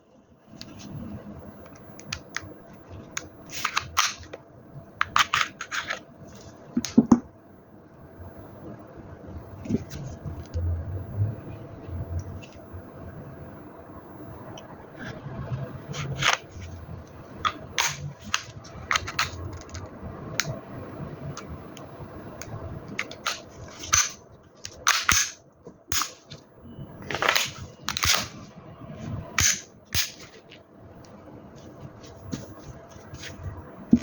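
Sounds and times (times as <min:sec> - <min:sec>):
airsoft pistol shots: 0:29.4 - 0:30.2.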